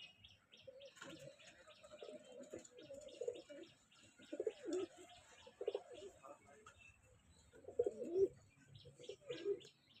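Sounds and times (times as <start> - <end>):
pigeons cooing: 0.6 - 6.2, 7.6 - 9.8.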